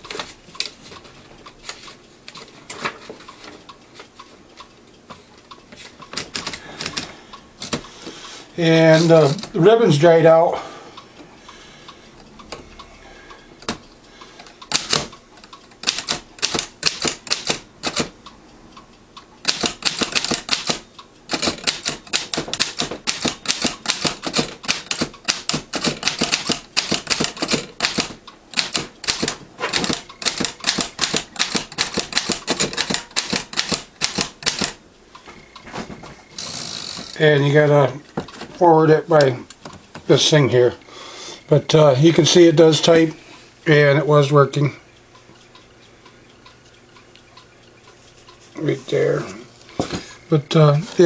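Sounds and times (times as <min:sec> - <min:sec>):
typewriter typebar clacks: 0:14.7 - 0:15.1, 0:15.8 - 0:18.1, 0:19.4 - 0:34.8.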